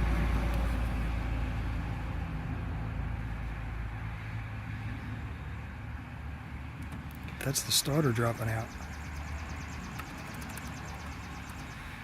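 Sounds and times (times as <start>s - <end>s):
engine turning over with low hum: 8.7s - 12.0s.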